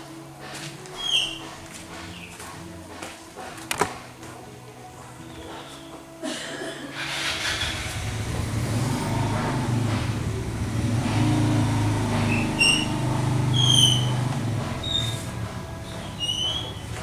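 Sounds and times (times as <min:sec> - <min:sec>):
high chirps or squeaks: 0:01.0 - 0:01.5, 0:11.9 - 0:17.0
motor rumbling: 0:07.2 - 0:17.0.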